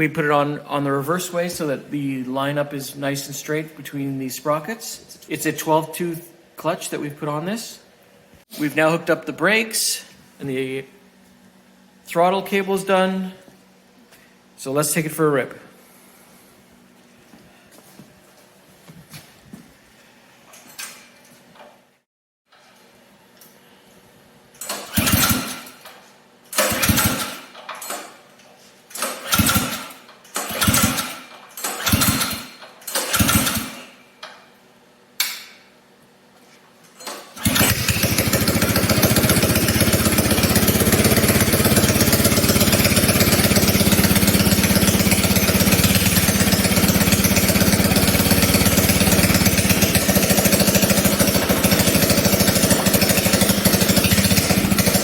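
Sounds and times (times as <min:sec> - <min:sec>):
small engine pull-start cranking: 0:24.6 - 0:28.2, 0:28.9 - 0:34.0, 0:37.0 - 0:55.0
small engine idling: 0:24.7 - 0:25.8, 0:26.6 - 0:27.6, 0:29.0 - 0:33.9, 0:37.3 - 0:55.0.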